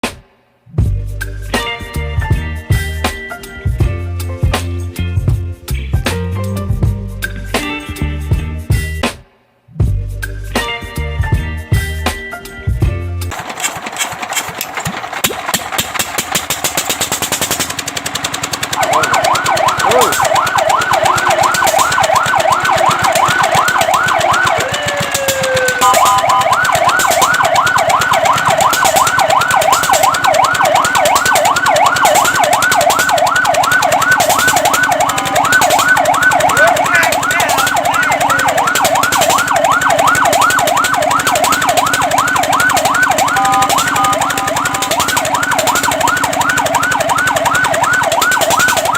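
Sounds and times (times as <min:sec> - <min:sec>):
fast steady pulsing: 0:13.3 - 0:48.9
fire truck siren yelping: 0:13.4 - 0:48.9.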